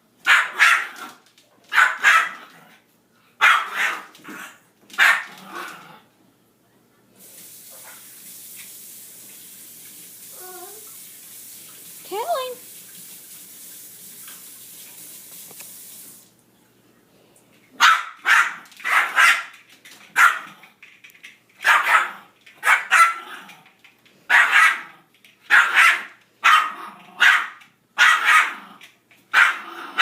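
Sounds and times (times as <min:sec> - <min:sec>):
dog barking: 0:00.2 - 0:01.0, 0:01.7 - 0:02.4, 0:03.4 - 0:04.1, 0:05.0 - 0:05.3, 0:17.8 - 0:19.5, 0:20.2 - 0:20.5, 0:21.6 - 0:23.2, 0:24.3 - 0:24.9, 0:25.5 - 0:28.6, 0:29.3 - 0:29.6
steady hiss: 0:07.2 - 0:16.4.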